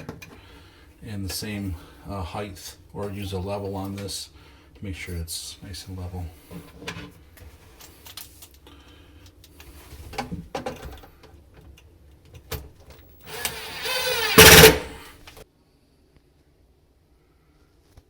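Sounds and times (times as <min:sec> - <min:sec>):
drill driving a screw: 0:13.2 - 0:15.1
parts knocking and clicking: 0:13.3 - 0:15.0.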